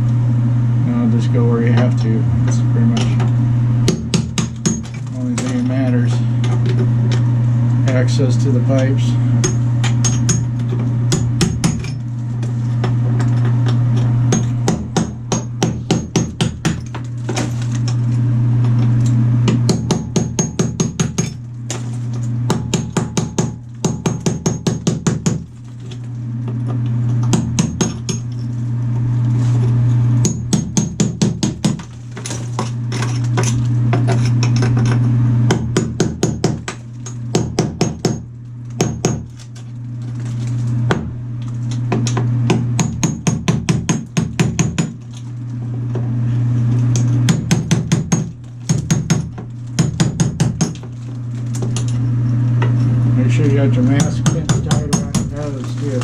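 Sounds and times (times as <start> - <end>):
steady low hum: 0.0 - 56.0
hammer chipping tile: 3.9 - 5.7, 14.3 - 17.6, 19.5 - 21.9, 22.5 - 26.0, 30.2 - 34.9, 35.5 - 38.2, 38.8 - 39.4, 41.9 - 45.1, 47.3 - 50.9, 54.0 - 56.0.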